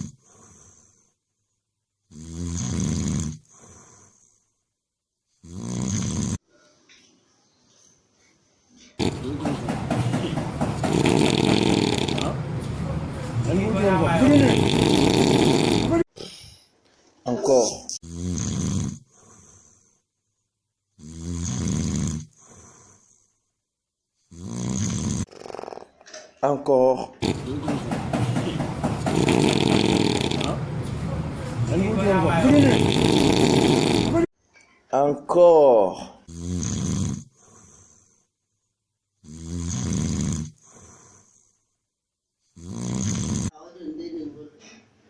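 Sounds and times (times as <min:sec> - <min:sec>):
person snoring: 0:00.0 - 0:01.2, 0:02.1 - 0:04.5, 0:05.4 - 0:06.4, 0:09.0 - 0:12.4, 0:14.1 - 0:16.6, 0:17.9 - 0:20.0, 0:21.0 - 0:23.4, 0:24.3 - 0:25.9, 0:27.2 - 0:30.6, 0:32.3 - 0:34.3, 0:36.0 - 0:38.3, 0:39.2 - 0:41.6, 0:42.6 - 0:43.5
faint breath out: 0:16.2 - 0:16.7, 0:40.6 - 0:41.6.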